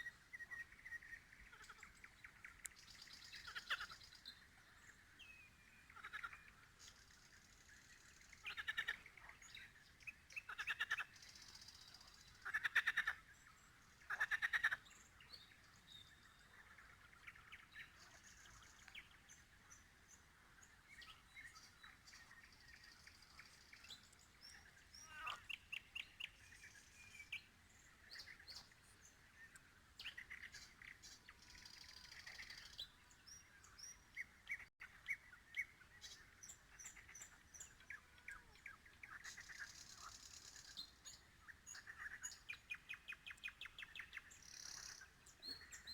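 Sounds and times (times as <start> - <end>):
nightingale singing trills: 20.8 - 45.9.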